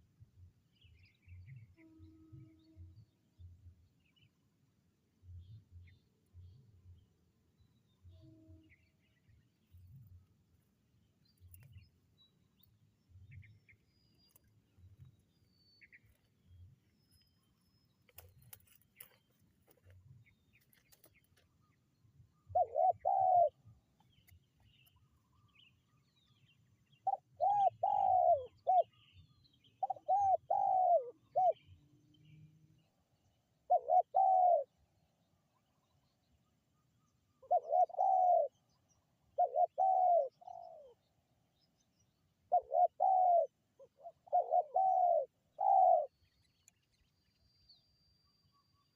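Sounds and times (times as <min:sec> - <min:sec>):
dove cooing: 0:22.5 - 0:23.6, 0:27.0 - 0:29.0, 0:29.8 - 0:31.7, 0:33.7 - 0:34.7, 0:37.4 - 0:38.6, 0:39.4 - 0:41.0, 0:42.5 - 0:46.1.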